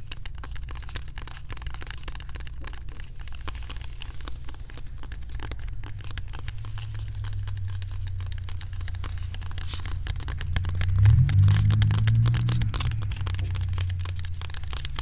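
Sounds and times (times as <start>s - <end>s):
steady low rumble: 4.3s - 15.0s.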